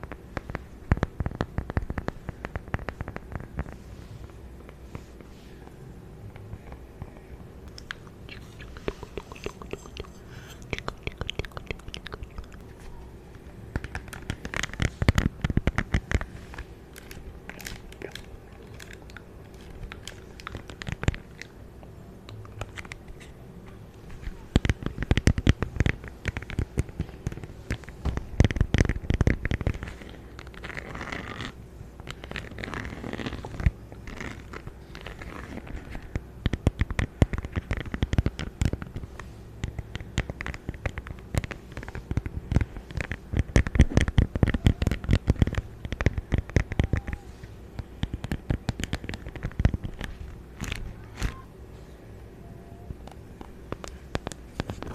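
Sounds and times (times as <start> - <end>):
object handling clicks and crackles: 7.7 - 21.6.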